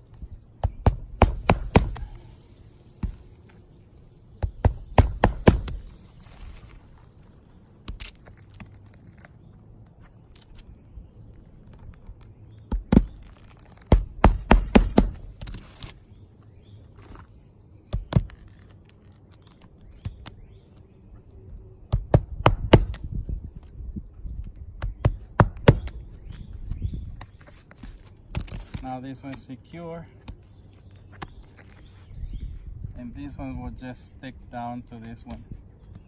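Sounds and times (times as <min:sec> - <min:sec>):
hammer driving nails into shingles: 0:00.6 - 0:02.1, 0:04.5 - 0:05.8, 0:13.9 - 0:15.2.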